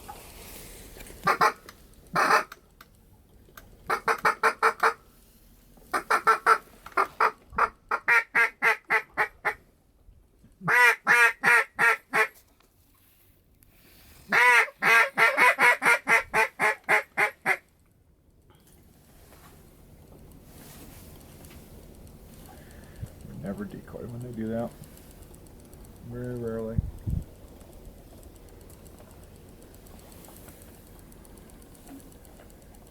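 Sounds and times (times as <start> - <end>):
duck quacking: 1.2 - 2.6, 5.9 - 9.6, 10.6 - 12.4, 14.3 - 17.6.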